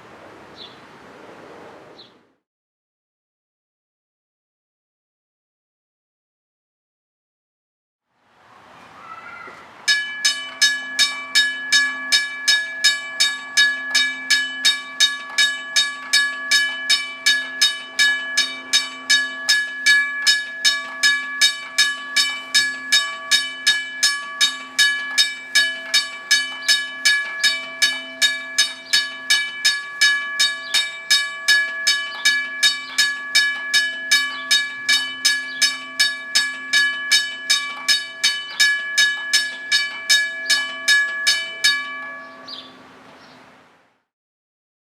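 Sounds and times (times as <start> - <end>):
railroad crossing bell ringing: 9.8 - 43.3.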